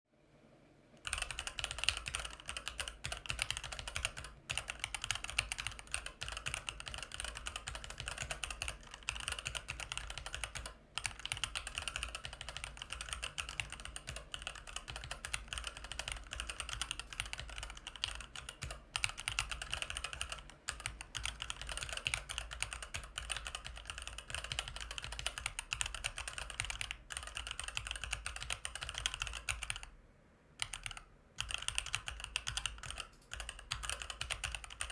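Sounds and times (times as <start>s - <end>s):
mechanical keyboard typing: 1.0s - 29.9s, 30.6s - 34.9s.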